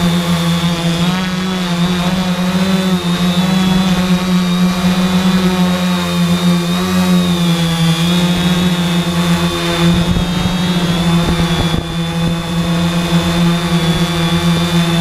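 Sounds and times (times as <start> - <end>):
quadcopter propellers buzzing: 0.0 - 15.0
wind buffeting microphone: 8.3 - 15.0.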